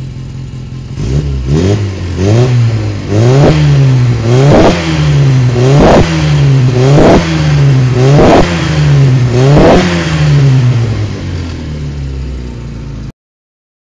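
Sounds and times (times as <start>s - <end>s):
car engine revving: 0.0s - 13.1s.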